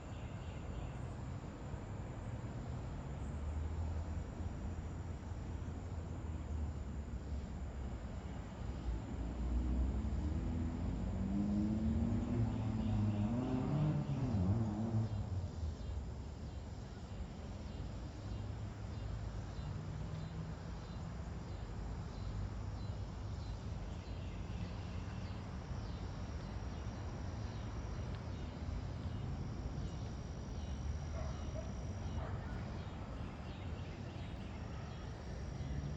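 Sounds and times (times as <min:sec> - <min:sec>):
distant road traffic rumble: 0:00.0 - 0:35.9
vehicle passing: 0:09.2 - 0:15.9
insects chirring: 0:10.8 - 0:35.9.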